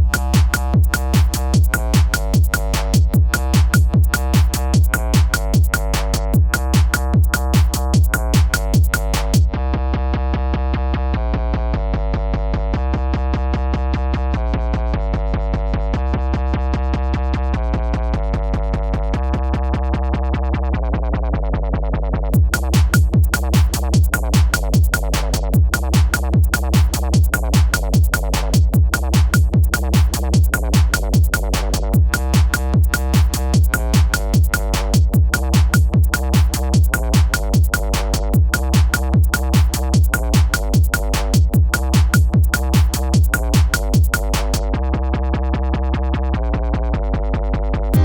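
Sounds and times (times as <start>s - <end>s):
drum-machine beat: 0.0s - 9.5s, 22.4s - 44.7s
steady bass: 0.0s - 48.0s.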